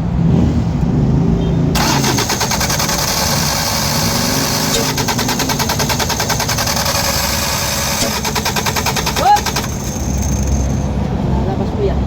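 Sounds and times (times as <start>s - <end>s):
diesel engine cranking on starter: 1.8s - 11.1s.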